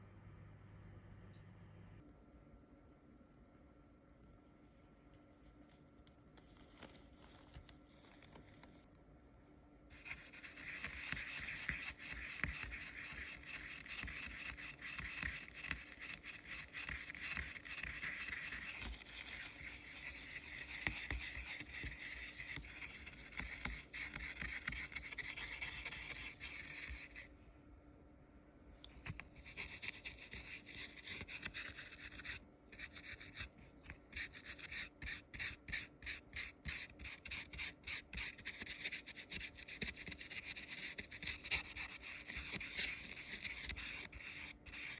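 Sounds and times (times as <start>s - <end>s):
dry rubbing of foil: 9.9s - 27.3s.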